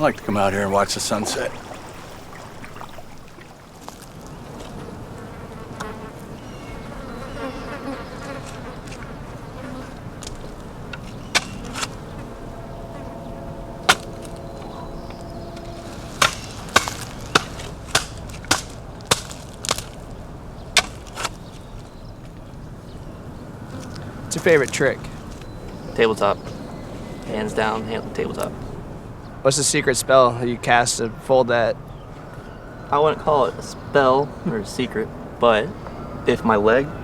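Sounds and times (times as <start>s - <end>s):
insects buzzing: 0.0s - 29.4s.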